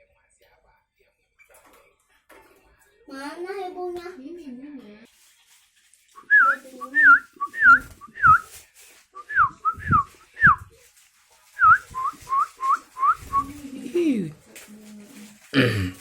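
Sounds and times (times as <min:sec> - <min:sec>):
person whistling: 0:06.3 - 0:08.5.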